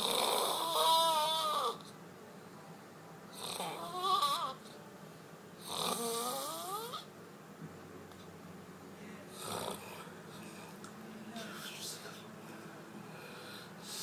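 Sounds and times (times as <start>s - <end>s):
person snoring with whining: 0.0s - 1.8s, 3.3s - 4.6s, 5.6s - 7.1s, 9.3s - 10.7s.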